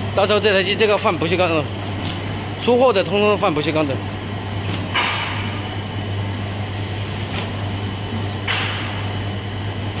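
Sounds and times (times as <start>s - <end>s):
machine motor hum: 0.0s - 10.0s.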